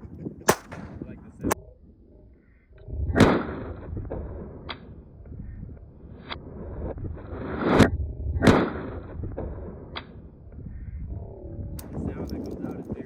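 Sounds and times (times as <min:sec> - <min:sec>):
rifle shots with rolling echo: 0:00.5 - 0:01.6, 0:03.2 - 0:05.2, 0:08.4 - 0:10.4.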